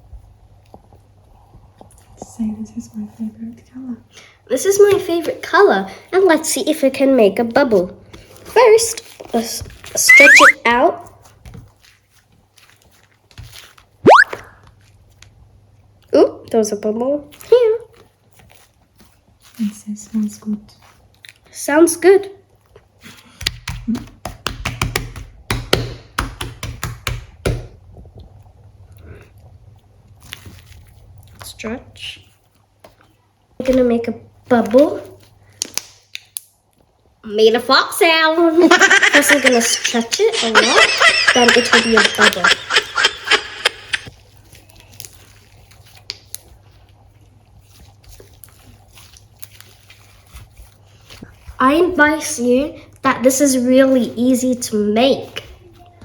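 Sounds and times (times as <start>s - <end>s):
slime clicking and popping: 10.1s - 10.6s, 14.1s - 14.4s.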